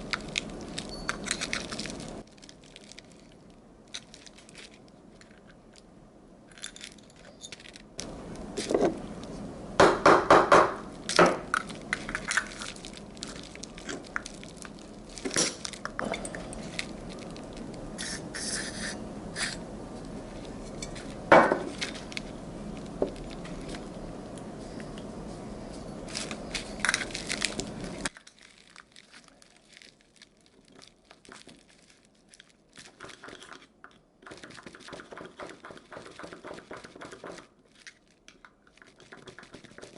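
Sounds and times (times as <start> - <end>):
steady background hum: 0.0 - 39.9
metal parts and tools clinking: 0.2 - 2.2, 6.5 - 7.9, 26.0 - 28.5.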